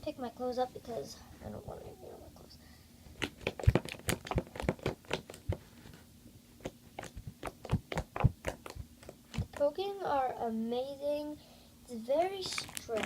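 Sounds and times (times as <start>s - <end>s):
air bubbles popping in slime: 7.0s - 9.6s.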